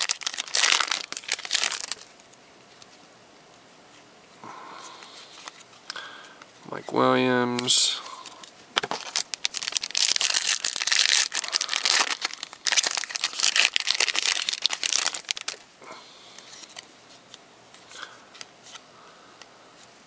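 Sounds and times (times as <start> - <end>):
foil wrapper crinkling and tearing: 0.0 - 2.2, 7.6 - 15.7.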